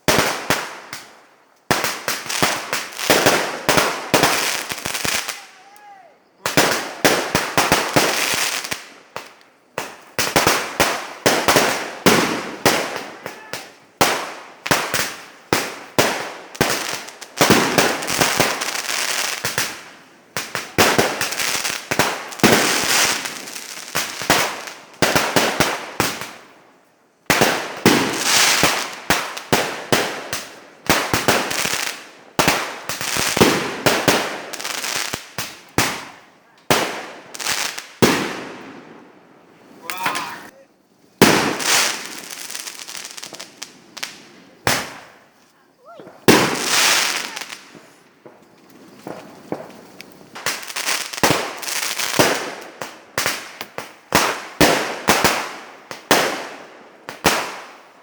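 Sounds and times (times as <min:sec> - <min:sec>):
fireworks bangs: 0:00.0 - 0:26.5, 0:27.3 - 0:40.6, 0:41.2 - 0:57.8.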